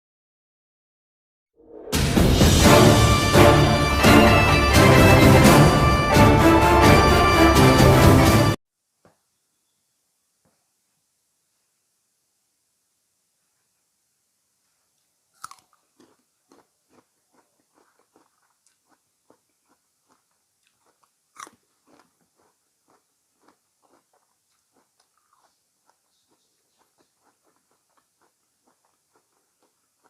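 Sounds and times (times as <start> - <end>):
crisp bite into fruit: 15.4 - 30.0
wet crunchy chewing: 15.4 - 30.0.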